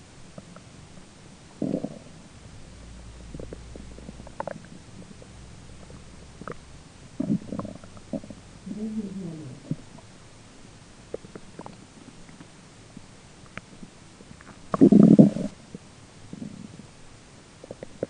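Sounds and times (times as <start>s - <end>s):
belly grumbling: 7.2s - 9.9s.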